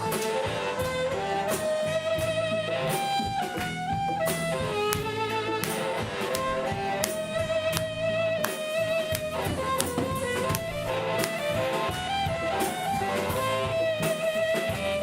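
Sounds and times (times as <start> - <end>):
strummed guitar: 0.0 - 15.0
wavering lead melody: 0.0 - 15.0
percussive hits: 3.0 - 13.7.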